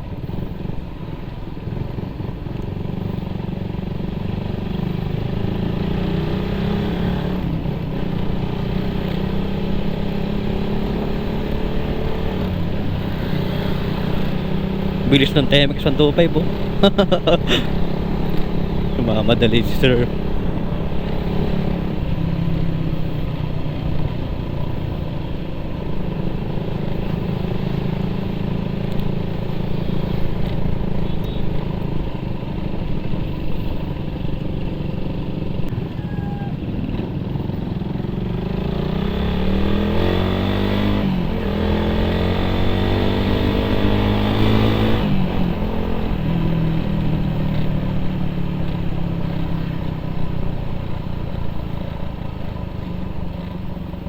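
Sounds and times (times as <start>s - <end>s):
motorcycle engine accelerating: 0.0s - 54.0s
motorcycle gear changes: 10.8s - 24.0s.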